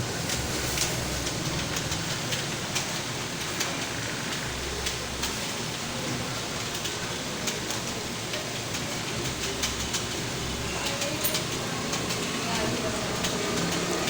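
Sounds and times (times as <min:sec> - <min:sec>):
steady hiss: 0:00.0 - 0:10.8.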